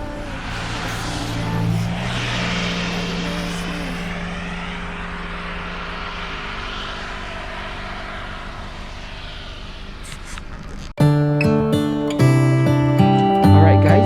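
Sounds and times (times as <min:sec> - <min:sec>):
rushing noise: 0:00.0 - 0:10.9
engine-like drone: 0:00.0 - 0:14.0.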